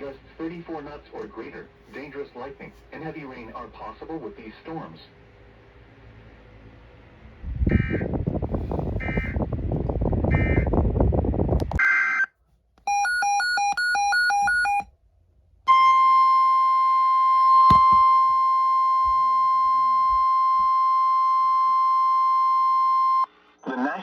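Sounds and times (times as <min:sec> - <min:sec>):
steady alarm tone: 0:12.9 - 0:14.8
short beeps: 0:12.9 - 0:14.9.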